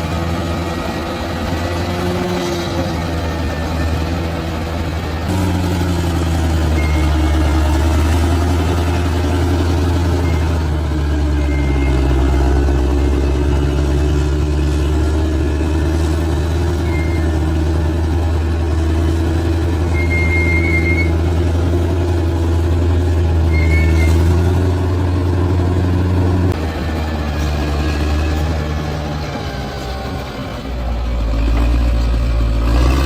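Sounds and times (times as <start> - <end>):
bulldozer diesel engine drone: 0.0 - 33.0
short high squeaks: 11.2 - 12.4, 16.8 - 17.4, 19.9 - 21.2, 23.5 - 24.5.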